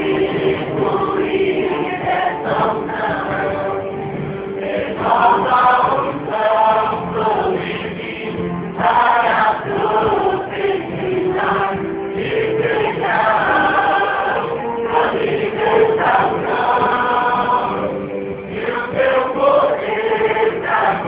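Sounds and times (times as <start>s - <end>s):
choir singing worship song: 0.0s - 21.0s.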